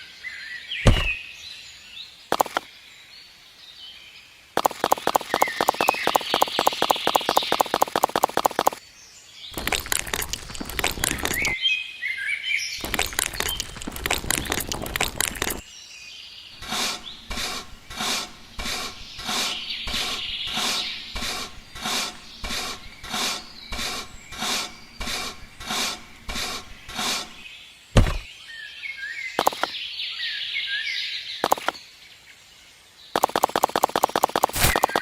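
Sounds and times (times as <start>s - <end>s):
birds chirping: 0.2s - 35.0s
sharp knock: 0.8s - 1.2s, 28.0s - 28.3s
rhythmic scraping strokes: 16.6s - 27.4s.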